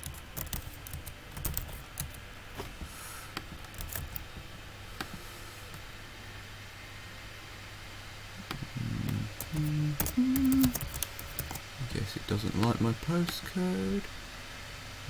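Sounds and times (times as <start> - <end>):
computer keyboard typing: 0.0 - 2.3, 3.4 - 4.4, 9.0 - 11.6.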